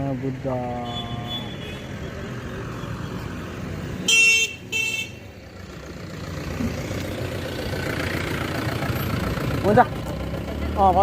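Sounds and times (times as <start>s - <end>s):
street noise rumble: 0.0s - 11.0s
vehicle horn toots: 4.1s - 5.2s.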